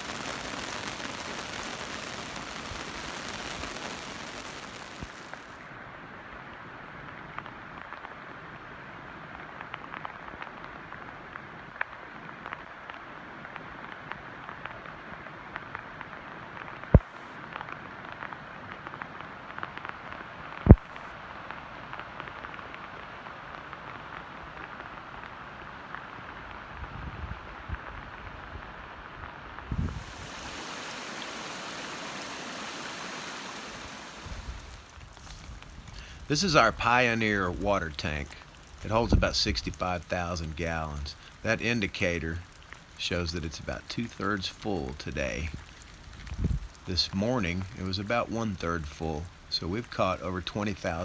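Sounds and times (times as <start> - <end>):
heavy rain falling: 0.0 - 51.0.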